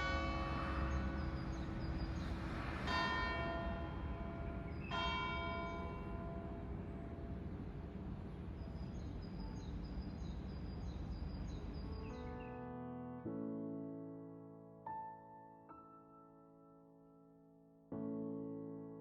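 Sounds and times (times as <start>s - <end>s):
church bell tolling: 0.0s - 7.5s.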